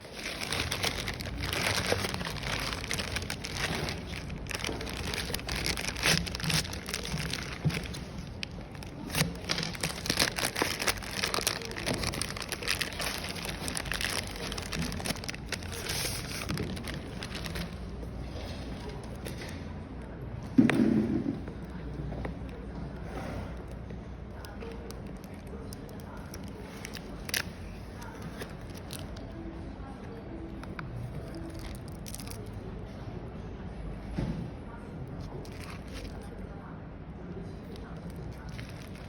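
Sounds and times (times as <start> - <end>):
packaging crinkling and rustling: 0.0 - 19.7, 24.3 - 29.4, 30.5 - 32.5, 35.0 - 36.4, 37.6 - 39.0.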